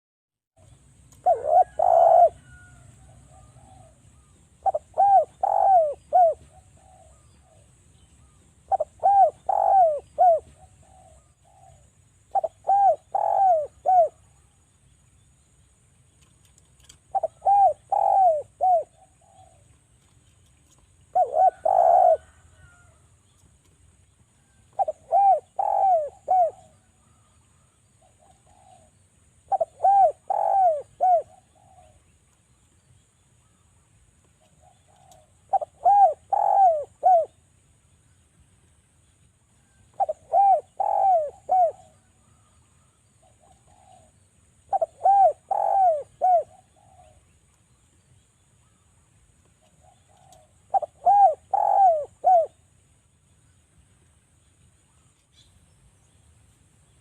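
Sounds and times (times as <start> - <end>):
dove cooing: 0.6 - 14.4, 16.8 - 20.0, 21.0 - 23.0, 24.4 - 32.1, 34.4 - 37.4, 39.6 - 47.3, 49.6 - 52.6.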